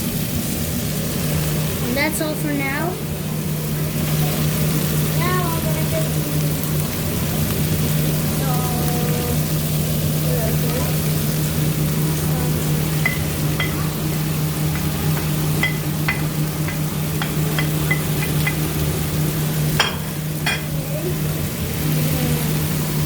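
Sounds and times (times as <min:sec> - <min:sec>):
food frying in a pan: 0:00.0 - 0:23.0
steady low hum: 0:00.0 - 0:23.0
utensil clinking against pan: 0:14.7 - 0:18.7, 0:19.8 - 0:20.8.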